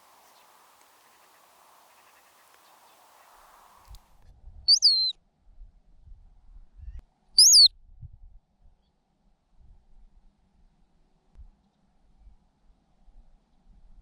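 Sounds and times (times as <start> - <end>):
ground squirrel alarm whistles: 4.7 - 5.1, 7.4 - 7.7.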